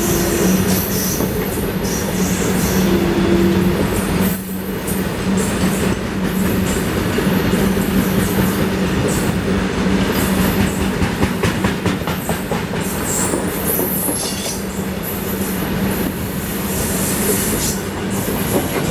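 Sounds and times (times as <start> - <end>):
wheels clacking over rail joints: 5.0 - 14.7.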